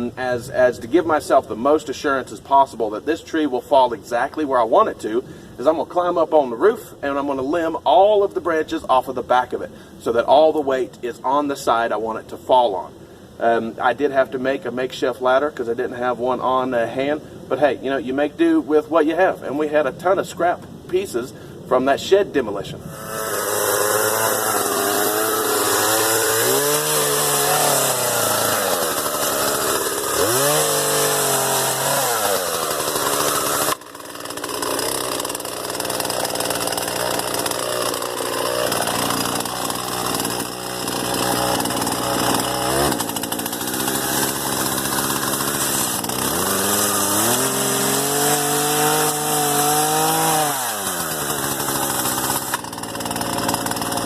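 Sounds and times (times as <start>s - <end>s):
chainsaw cutting and revving: 22.9s - 54.0s.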